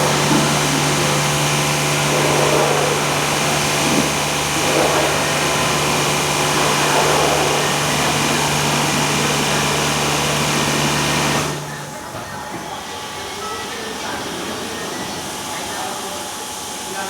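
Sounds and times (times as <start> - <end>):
rushing brushes and spray: 0.0 - 9.7
car wash motor hum: 0.0 - 17.0.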